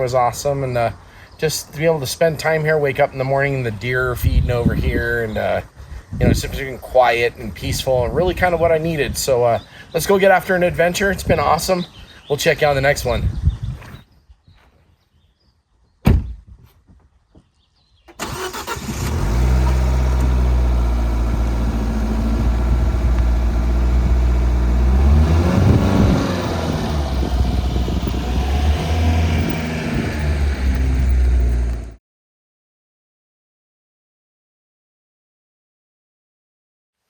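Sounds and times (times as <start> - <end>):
sharp thud: 16.0 - 16.5
car engine starting and running: 18.1 - 32.0.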